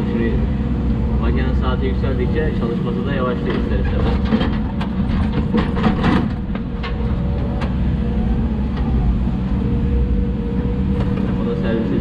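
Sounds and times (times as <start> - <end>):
excavator diesel engine running: 0.0 - 12.0
machine knocks and clatters: 3.3 - 7.8.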